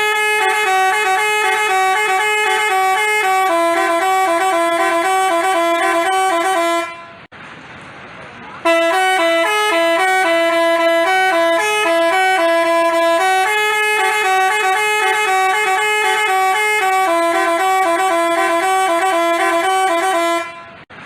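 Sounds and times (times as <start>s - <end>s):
bus horn playing a tune: 0.0s - 7.3s, 8.6s - 20.9s.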